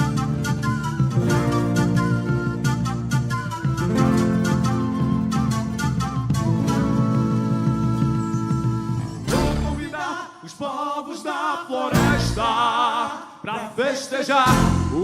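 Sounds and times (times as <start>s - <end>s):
man singing ornamented line: 7.7s - 15.0s.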